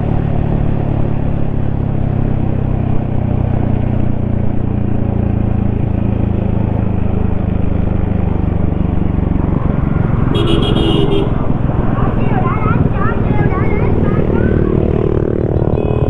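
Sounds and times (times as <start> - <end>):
motorcycle engine cruising: 0.0 - 16.0
short horn toot: 10.3 - 11.4.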